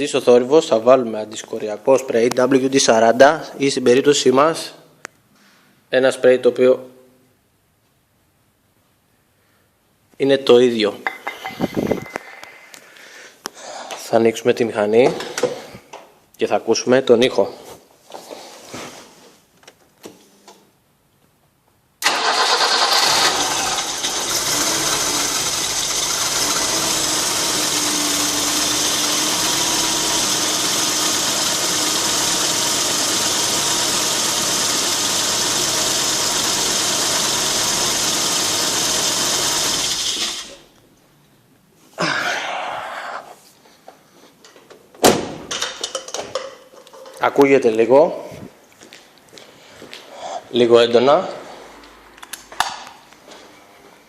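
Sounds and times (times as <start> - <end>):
car engine cranking and starting: 22.0 - 40.7
engine running: 22.8 - 40.6.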